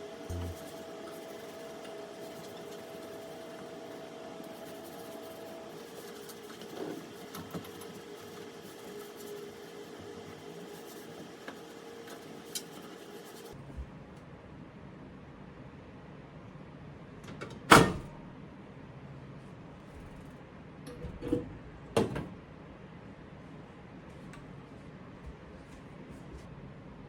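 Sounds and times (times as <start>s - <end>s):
faint steady hum: 0.0s - 1.2s.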